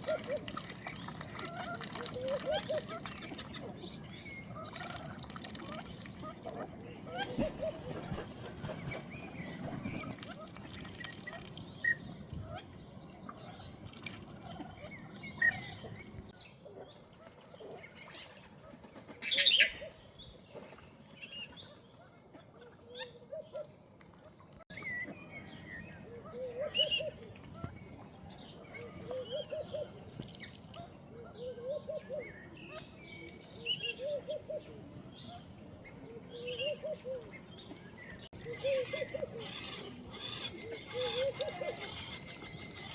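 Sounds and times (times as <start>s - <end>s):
ducks splashing in water: 0.0s - 4.0s.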